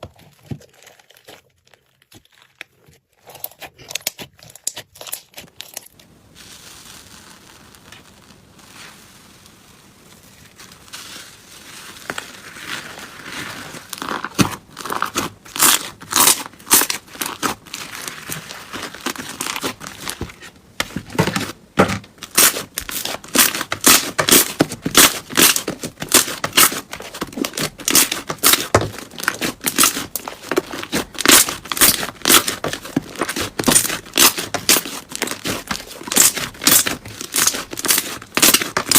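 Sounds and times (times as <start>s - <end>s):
slime crackling pops: 22.3s - 38.9s.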